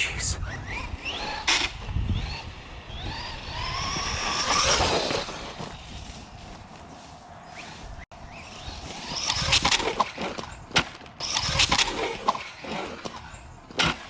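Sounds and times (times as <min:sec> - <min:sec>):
rc car tyres rolling: 0:00.4 - 0:14.0.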